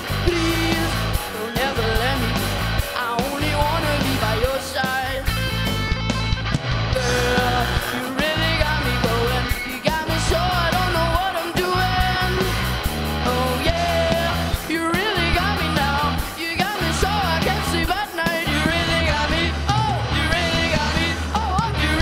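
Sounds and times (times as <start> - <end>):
lead vocalist singing: 0.0 - 5.4, 6.9 - 22.0
rock band playing live: 0.0 - 22.0.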